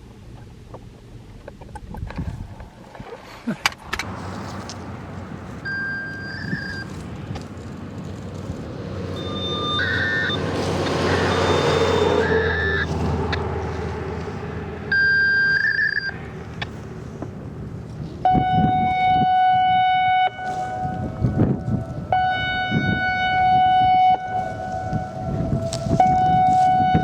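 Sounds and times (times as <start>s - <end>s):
short high beep: 5.7s - 6.8s, 9.2s - 10.4s, 11.1s - 12.9s, 14.9s - 16.1s
warning siren hi-lo tone: 9.1s - 13.4s, 18.2s - 27.0s.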